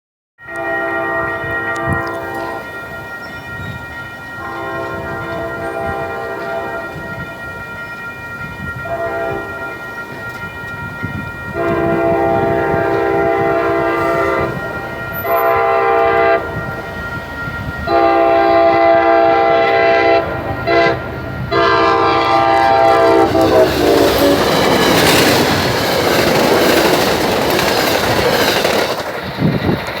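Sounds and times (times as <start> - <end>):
locomotive air horn blasts: 0.4 - 2.8, 4.4 - 7.1, 8.8 - 9.7, 11.5 - 16.8, 17.8 - 25.7
train wheels clattering on rails: 21.5 - 30.0.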